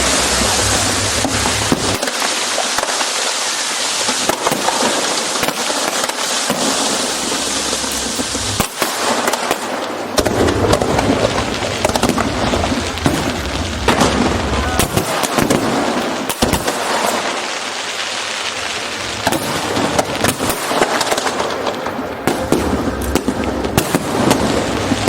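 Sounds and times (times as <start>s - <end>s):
low rumble: 0.0s - 2.0s, 7.5s - 8.6s, 10.3s - 15.0s
fireworks crackling and banging: 0.0s - 25.0s.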